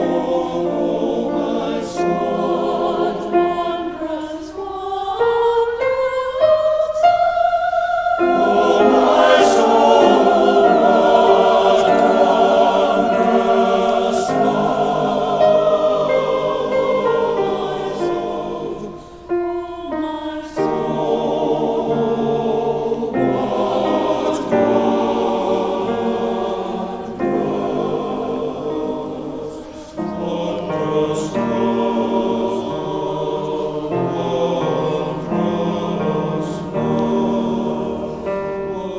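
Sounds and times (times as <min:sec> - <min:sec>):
choir singing: 0:00.0 - 0:38.9.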